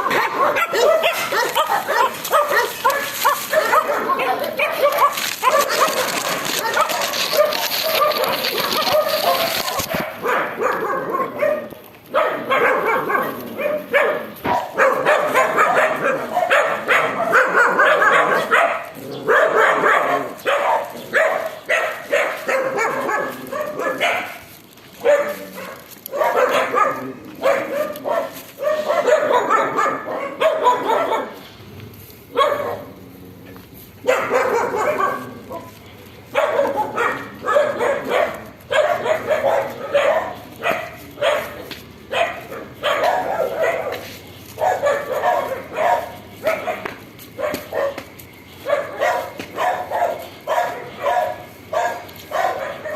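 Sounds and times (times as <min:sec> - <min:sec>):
dogs barking and yelping: 0:00.0 - 0:52.9.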